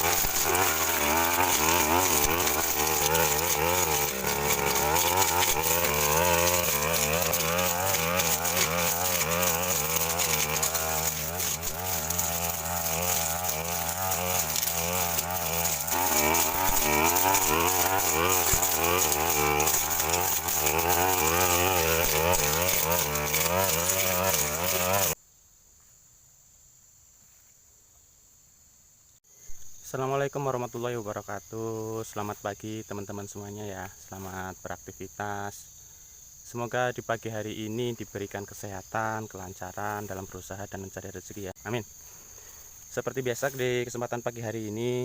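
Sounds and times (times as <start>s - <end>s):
brush cutter engine: 0.0s - 25.2s
crickets chirring: 0.0s - 45.0s.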